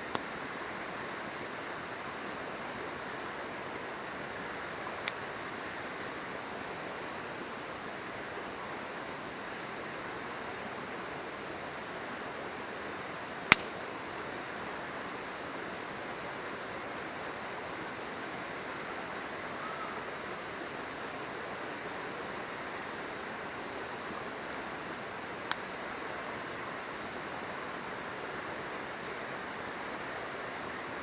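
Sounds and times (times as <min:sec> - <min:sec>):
river rushing: 0:00.0 - 0:31.0
campfire wood popping: 0:05.0 - 0:05.2, 0:13.4 - 0:14.0, 0:24.1 - 0:26.1.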